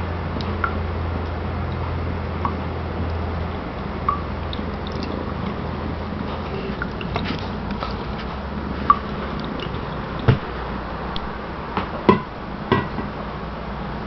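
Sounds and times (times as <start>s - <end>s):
water running into sink: 4.1s - 10.6s.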